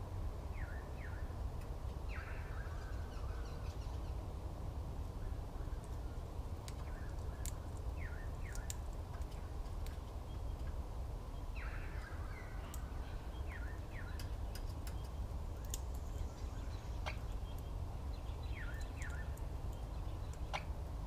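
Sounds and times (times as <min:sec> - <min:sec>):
steady low rumble: 0:00.0 - 0:21.0
birds calling with sliding notes: 0:05.2 - 0:20.8.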